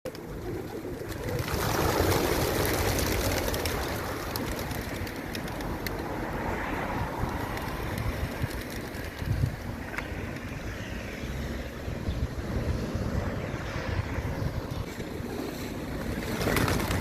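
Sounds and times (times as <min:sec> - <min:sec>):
pigeon wings whirring: 0:00.1 - 0:06.3, 0:07.2 - 0:09.7, 0:15.0 - 0:17.0.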